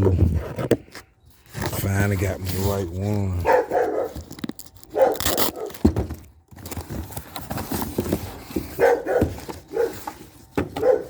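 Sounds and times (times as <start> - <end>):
dog barking: 3.4 - 4.2, 4.9 - 5.8, 8.7 - 10.1, 10.7 - 11.0.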